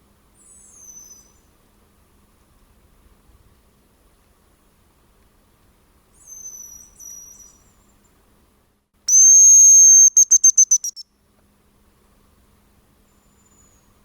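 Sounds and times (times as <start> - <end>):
decoy whistle: 9.1 - 11.0
distant faint high whistle: 9.1 - 11.0.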